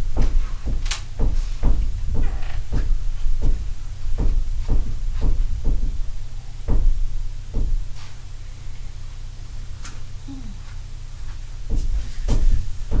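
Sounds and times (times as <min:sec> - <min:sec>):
dull thumps and knocks: 0:00.0 - 0:08.0, 0:11.7 - 0:13.0
steady low hum: 0:00.0 - 0:13.0.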